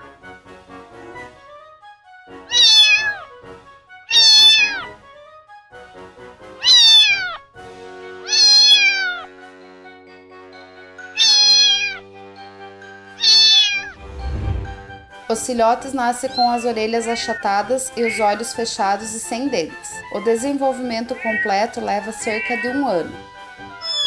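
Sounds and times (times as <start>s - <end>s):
soft background music: 0.0s - 24.0s
cat meowing: 2.5s - 3.3s, 4.1s - 5.0s, 6.6s - 7.5s, 8.2s - 9.3s, 11.0s - 12.0s, 13.2s - 14.0s, 16.3s - 18.6s, 20.7s - 24.0s.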